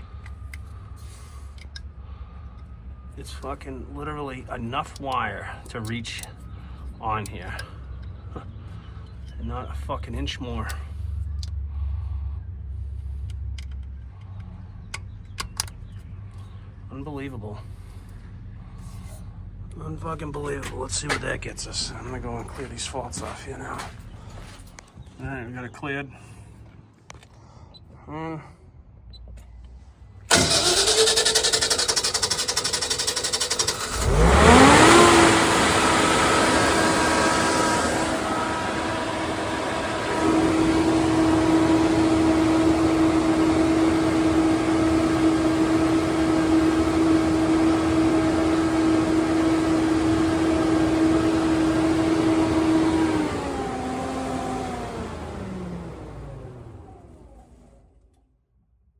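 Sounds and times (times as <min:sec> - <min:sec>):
generator engine running: 0:00.0 - 0:25.7, 0:30.3 - 0:57.8
generator starter cranking: 0:30.3 - 0:57.4
engine winding down: 0:30.3 - 0:58.1.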